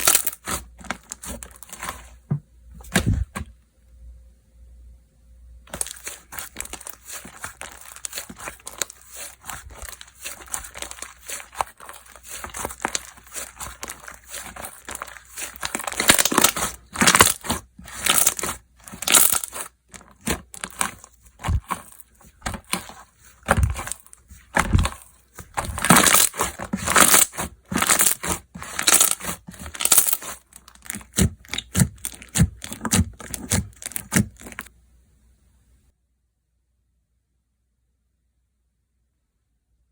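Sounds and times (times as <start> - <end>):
slime squelching: 0.0 - 2.2, 5.7 - 34.7
slime crackling and popping: 5.7 - 34.7.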